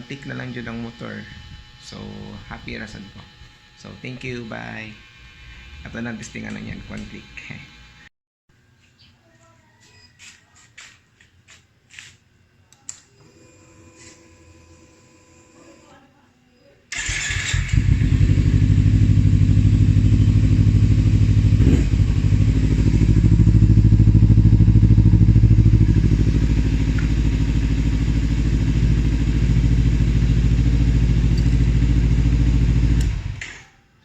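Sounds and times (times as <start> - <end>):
motorcycle engine idling: 17.0 - 33.4.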